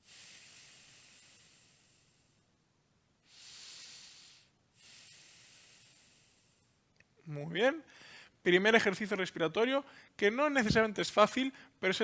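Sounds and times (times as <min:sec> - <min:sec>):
person breathing slowly: 0:00.0 - 0:02.5, 0:03.2 - 0:06.8, 0:07.9 - 0:08.4.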